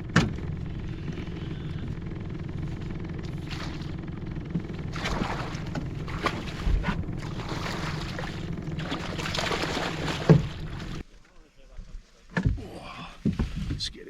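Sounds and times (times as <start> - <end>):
boat motor humming: 0.0 - 11.1
water splashes: 3.2 - 11.1.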